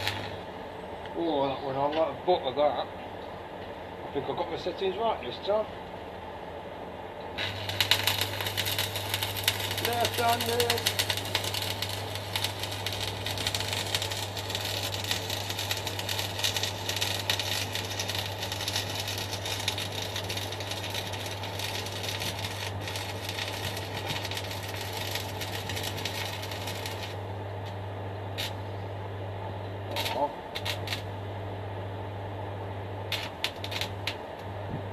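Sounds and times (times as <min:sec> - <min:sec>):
welding arc crackling: 0:00.0 - 0:00.6, 0:07.3 - 0:28.9, 0:29.8 - 0:31.2, 0:33.0 - 0:34.5
low hum: 0:06.5 - 0:34.9.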